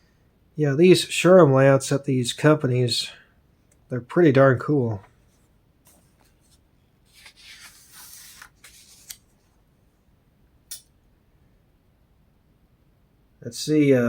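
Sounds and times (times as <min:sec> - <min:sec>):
book pages turning: 0:05.0 - 0:09.6.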